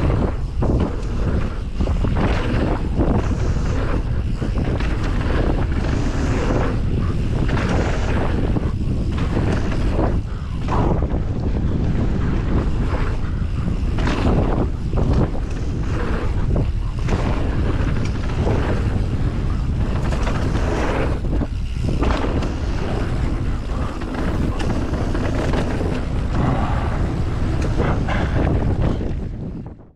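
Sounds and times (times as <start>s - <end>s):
tyres rolling over dirt trail: 0.0s - 29.5s
wind buffeting microphone: 0.0s - 29.9s
bike knocks and rattles: 6.6s - 26.4s.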